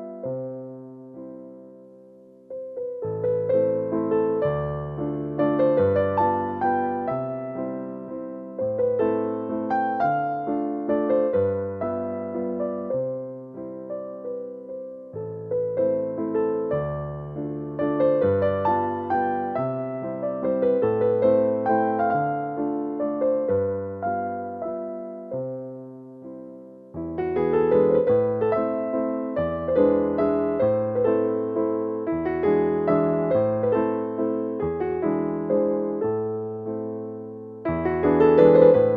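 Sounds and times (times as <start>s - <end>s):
electric piano melody: 0.0s - 38.9s.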